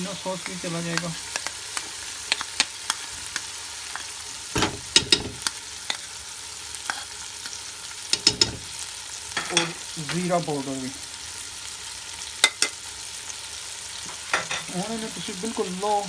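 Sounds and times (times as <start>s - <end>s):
chicken sizzling in hot oil: 0.0s - 16.0s
spoon knocking and scraping pan: 0.4s - 6.2s, 6.8s - 10.3s, 12.4s - 12.8s, 14.0s - 14.8s.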